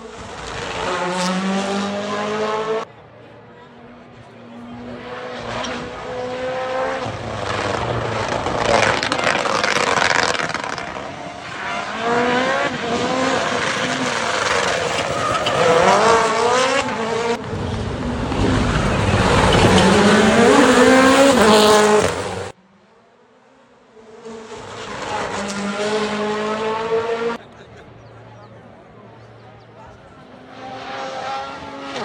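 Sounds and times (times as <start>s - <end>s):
rally car engines revving: 0.0s - 32.0s.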